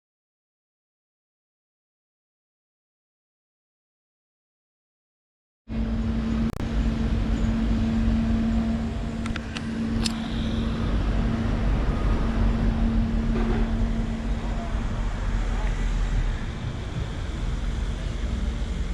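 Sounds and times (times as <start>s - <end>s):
low rumble: 5.7s - 18.9s
mechanical hum: 5.7s - 18.9s.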